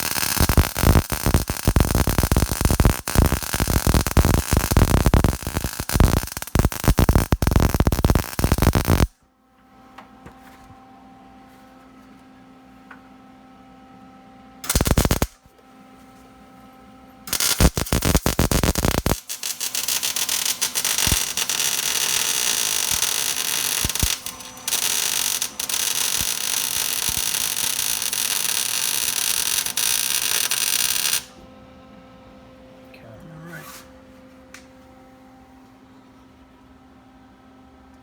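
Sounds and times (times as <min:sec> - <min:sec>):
welding arc crackling: 0:00.0 - 0:09.1, 0:14.6 - 0:15.4, 0:17.3 - 0:31.4.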